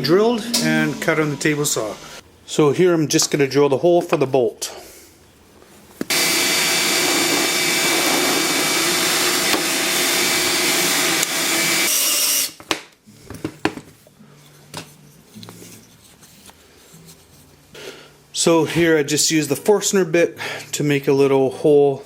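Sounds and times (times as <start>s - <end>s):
power drill boring wood: 6.1s - 12.6s.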